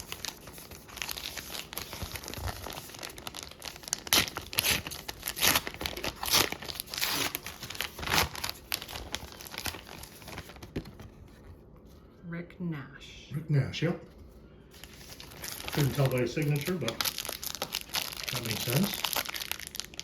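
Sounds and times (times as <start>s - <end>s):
wrapper tearing and crinkling: 0.0s - 10.8s, 14.8s - 20.0s.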